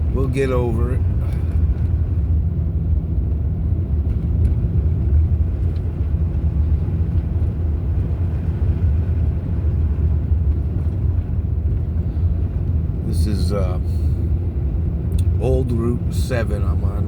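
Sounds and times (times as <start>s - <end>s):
car engine and tyres rumbling: 0.0s - 17.0s
faint light ticks: 5.6s - 5.9s, 15.1s - 15.4s.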